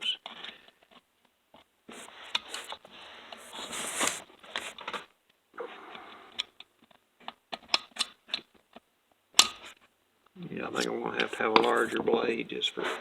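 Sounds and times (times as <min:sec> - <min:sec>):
hissing scrape: 0:01.9 - 0:04.8, 0:12.8 - 0:13.0.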